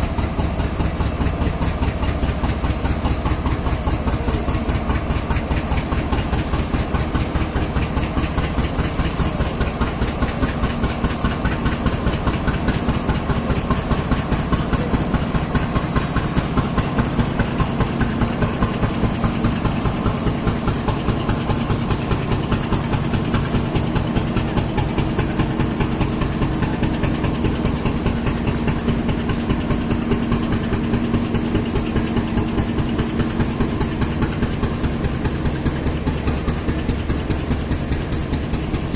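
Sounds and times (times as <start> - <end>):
locomotive engine idling: 0.0 - 38.9.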